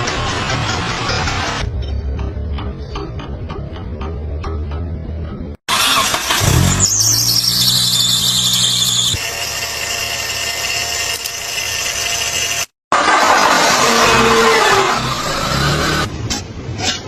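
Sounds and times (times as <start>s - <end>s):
high-pitched squeal under vehicle: 6.2s - 12.5s.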